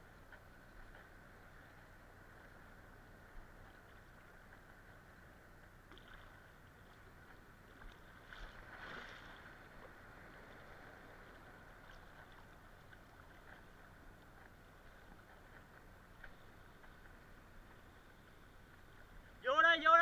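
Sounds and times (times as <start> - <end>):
faint ticks: 11.8 - 19.2.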